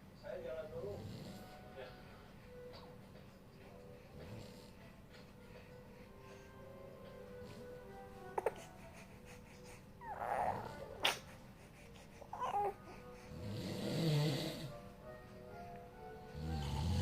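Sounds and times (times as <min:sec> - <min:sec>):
baby whimpering: 0:07.6 - 0:13.5
man snoring: 0:13.3 - 0:14.7, 0:16.3 - 0:17.0.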